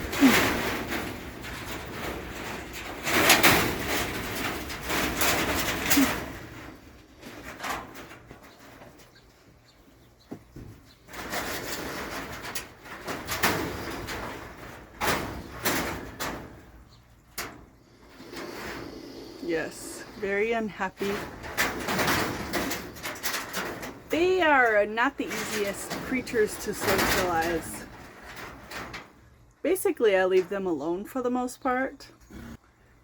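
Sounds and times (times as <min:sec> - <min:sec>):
lizard hissing: 0:18.2 - 0:20.0.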